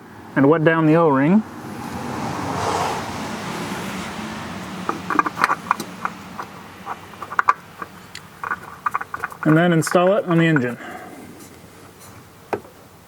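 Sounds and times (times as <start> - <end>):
vehicle passing by: 1.0 - 7.2.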